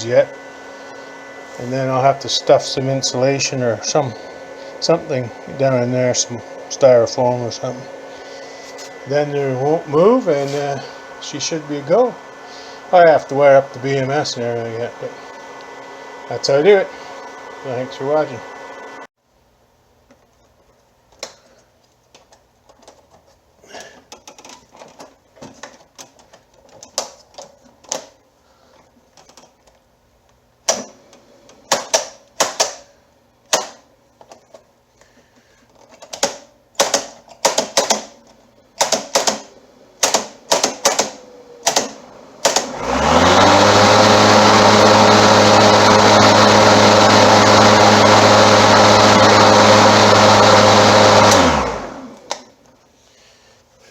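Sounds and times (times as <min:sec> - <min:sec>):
electric lawn mower motor humming: 0:00.0 - 0:19.1, 0:40.9 - 0:52.5
sharp clicks and knocks: 0:24.1 - 0:28.2, 0:35.7 - 0:42.7.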